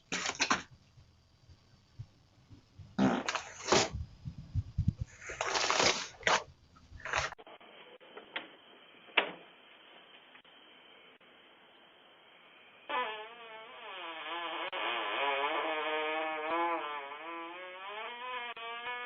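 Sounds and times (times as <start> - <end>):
man farting: 3.0 - 3.9, 12.9 - 19.0.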